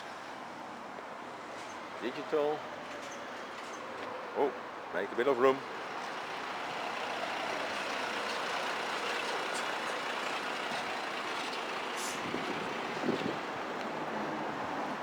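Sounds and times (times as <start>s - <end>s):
truck running: 5.8s - 14.7s.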